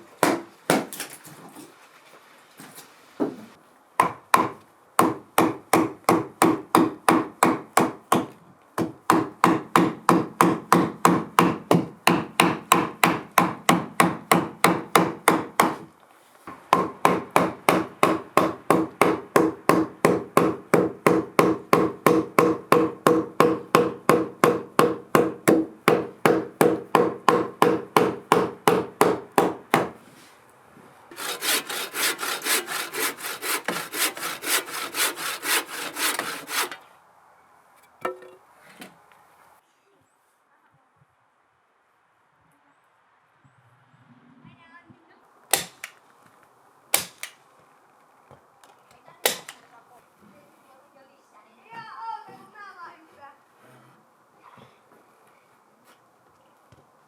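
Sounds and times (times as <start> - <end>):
hand saw cutting wood: 31.1 - 36.9.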